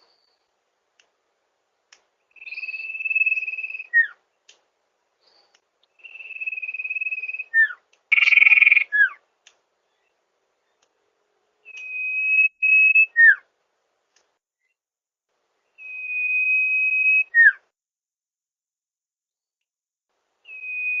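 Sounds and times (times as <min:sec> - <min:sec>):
bird whistling high and long: 0:02.3 - 0:04.2, 0:06.0 - 0:09.2, 0:11.6 - 0:13.4, 0:15.8 - 0:17.6, 0:20.4 - 0:21.0.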